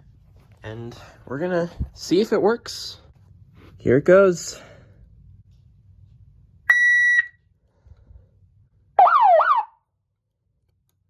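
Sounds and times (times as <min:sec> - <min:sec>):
security siren steady high tone: 0:06.7 - 0:07.4, 0:09.0 - 0:09.9
siren wail sweeping up and down: 0:09.0 - 0:09.8.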